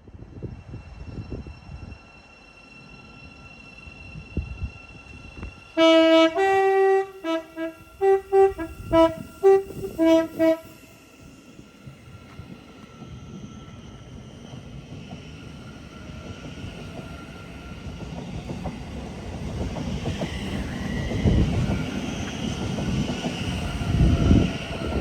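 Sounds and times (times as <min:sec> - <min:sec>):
train two-tone horn: 0:05.8 - 0:10.9.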